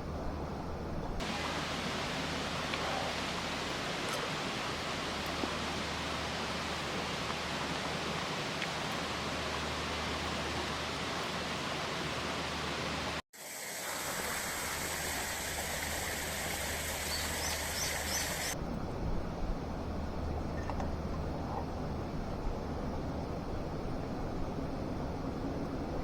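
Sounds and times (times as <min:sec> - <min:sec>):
steady outdoor rushing noise: 0:00.0 - 0:20.5.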